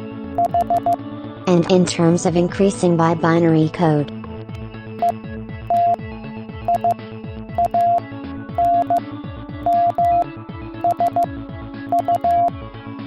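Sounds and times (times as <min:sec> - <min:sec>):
electronic background music: 0:00.4 - 0:01.0, 0:06.6 - 0:08.0, 0:08.6 - 0:09.0, 0:09.6 - 0:11.3, 0:11.9 - 0:12.5
morse code tones: 0:00.4 - 0:01.0, 0:05.0 - 0:06.0, 0:06.7 - 0:07.0, 0:07.6 - 0:08.0, 0:08.6 - 0:09.0, 0:09.6 - 0:11.3, 0:11.9 - 0:12.5.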